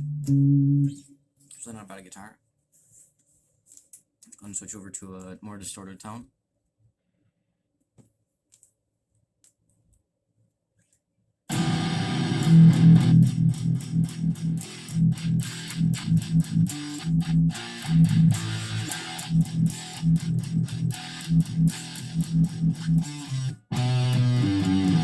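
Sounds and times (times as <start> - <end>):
distorted electric guitar riff: 0.0 - 1.1, 11.5 - 25.0.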